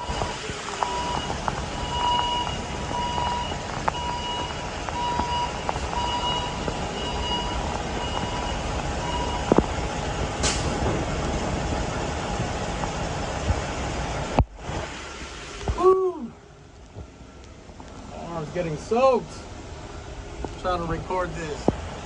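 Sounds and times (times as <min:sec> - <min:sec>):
machine warning beep: 0:00.0 - 0:09.5
heavy rain hissing: 0:00.0 - 0:16.4
raindrops ticking on surfaces: 0:00.0 - 0:22.0.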